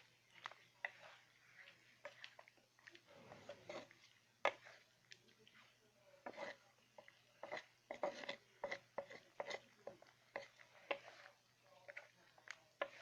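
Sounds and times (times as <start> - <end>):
utensil stirring in a pan: 0.0 - 13.0
utensil scraping and clinking pan: 3.2 - 4.8, 6.2 - 12.1, 12.8 - 13.0.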